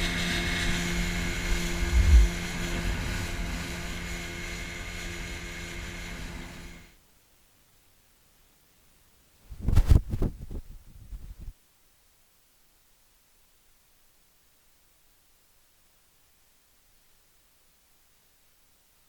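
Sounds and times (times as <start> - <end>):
low thump: 1.8 - 2.3.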